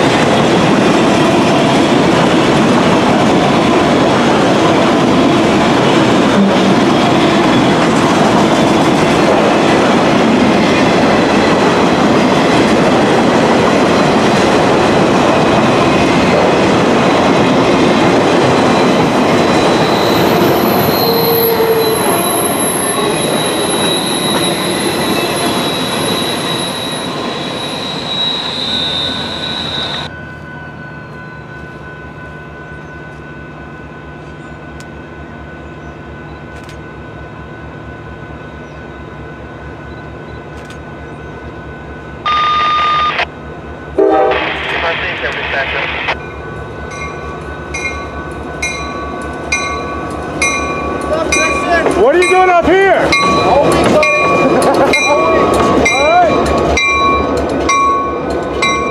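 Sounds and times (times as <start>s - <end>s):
train wheels rumbling on rail: 0.0s - 42.3s, 43.3s - 58.9s
high wheel squeal: 18.5s - 32.0s.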